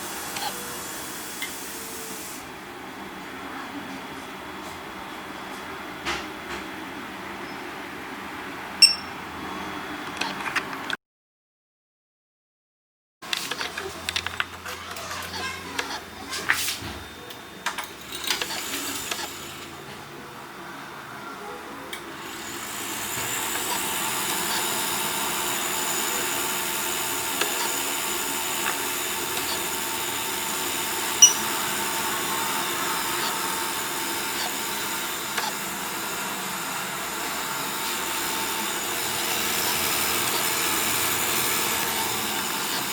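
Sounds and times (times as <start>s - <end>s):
computer fans whirring: 0.0s - 10.9s, 13.2s - 42.9s
sharp click with high chirp: 8.8s - 9.1s, 31.2s - 31.5s.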